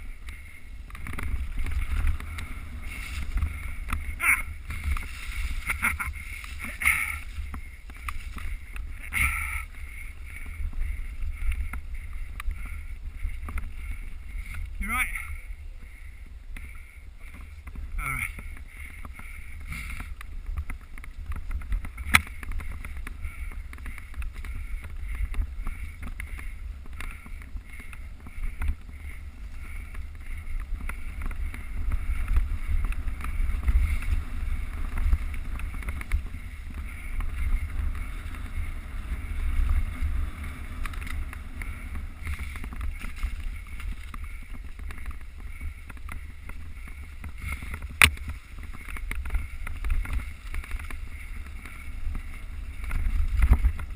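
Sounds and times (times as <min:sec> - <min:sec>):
bike riding noise on trail: 0:00.0 - 0:53.9
wind rumble: 0:00.0 - 0:53.9.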